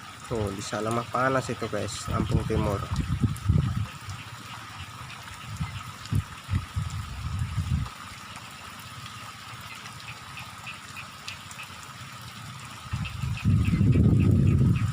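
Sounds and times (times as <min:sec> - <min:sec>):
low rumbles: 0:01.9 - 0:03.9.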